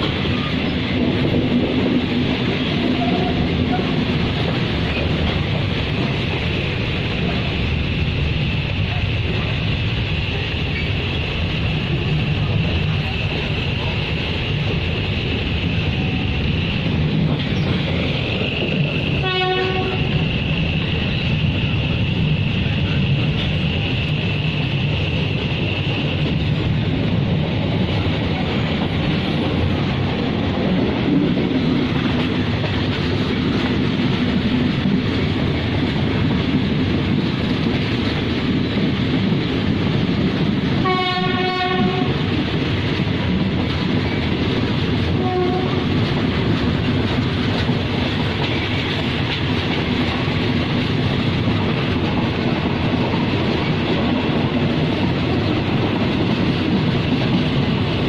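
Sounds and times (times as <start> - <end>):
train wheels rumbling on rails: 0.0 - 58.0
locomotive horn blasts: 3.0 - 3.8, 19.2 - 20.2, 40.8 - 42.2, 45.1 - 45.9.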